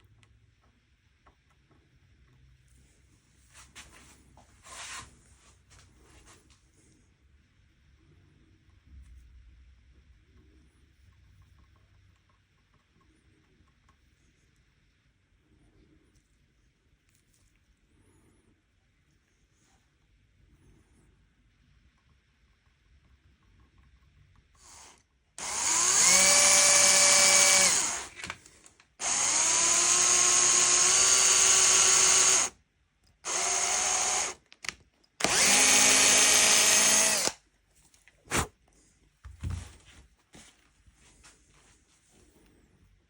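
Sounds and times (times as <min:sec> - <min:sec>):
electric drill whining: 0:24.6 - 0:28.3, 0:29.0 - 0:32.6, 0:33.2 - 0:34.4, 0:35.2 - 0:37.4.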